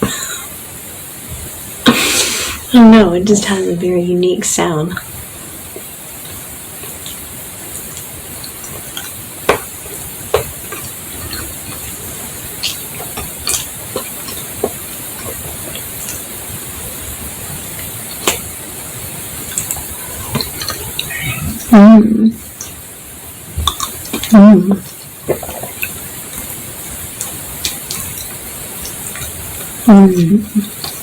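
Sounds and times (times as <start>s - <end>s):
steady hiss: 0.0s - 31.0s
wet mouth clicks and smacks: 5.7s - 16.3s, 18.1s - 18.5s, 19.5s - 21.7s, 23.6s - 26.6s, 27.2s - 29.8s.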